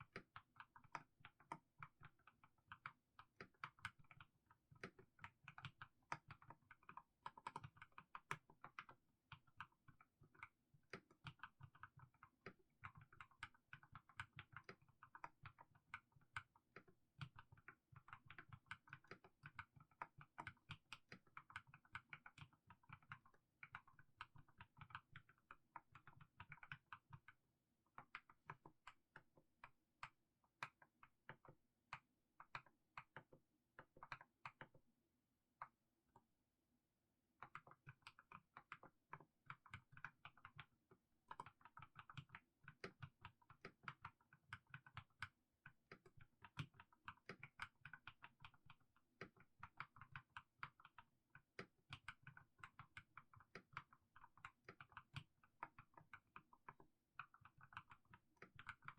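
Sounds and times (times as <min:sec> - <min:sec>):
typing on mechanical keyboard: 0:37.4 - 0:58.9.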